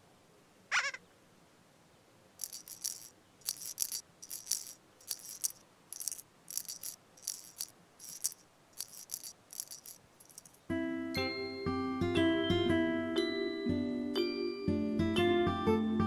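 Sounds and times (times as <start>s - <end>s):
rattle shaker shaking: 2.4s - 10.7s.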